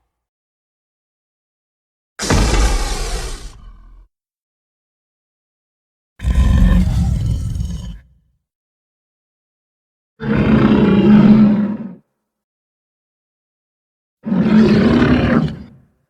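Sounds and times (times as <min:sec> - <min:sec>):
creature roars: 0:02.2 - 0:04.0, 0:06.2 - 0:08.1.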